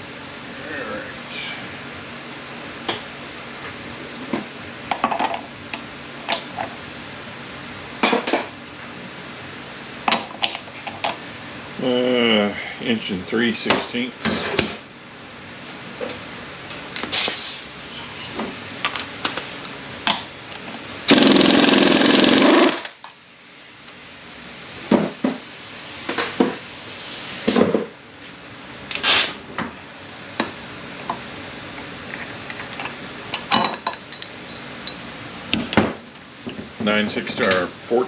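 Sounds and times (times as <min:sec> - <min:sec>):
pneumatic impact wrench: 0:21.0 - 0:23.0, 0:28.9 - 0:29.4
metal clinks of tools and parts: 0:32.6 - 0:35.0.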